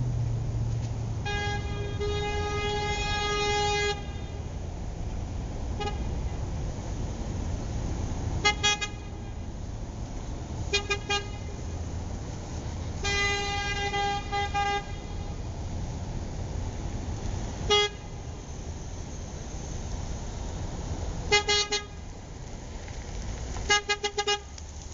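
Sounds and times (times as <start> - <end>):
car horn honking: 1.2 - 4.4, 5.8 - 6.2, 8.4 - 9.4, 10.7 - 11.6, 13.0 - 15.4, 17.7 - 18.4, 21.3 - 22.0, 23.7 - 24.5.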